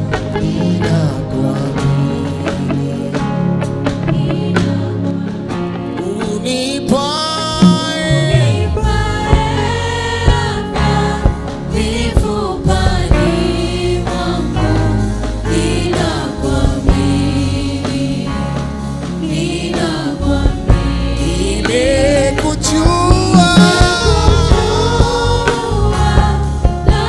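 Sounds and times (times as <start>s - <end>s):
band accompaniment: 0.0s - 27.0s
choir singing gospel song: 0.0s - 27.0s
drum hits: 7.6s - 27.0s.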